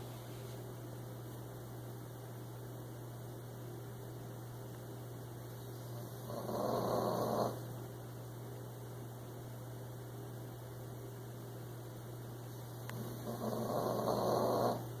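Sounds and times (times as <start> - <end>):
steady low hum: 0.0 - 15.0
pet snoring: 5.9 - 7.6, 12.9 - 15.0.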